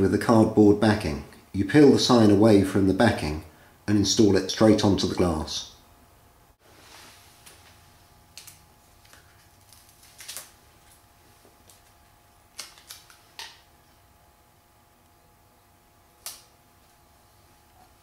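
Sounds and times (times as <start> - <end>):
film clicking and rustling: 8.3 - 11.0, 11.6 - 13.6.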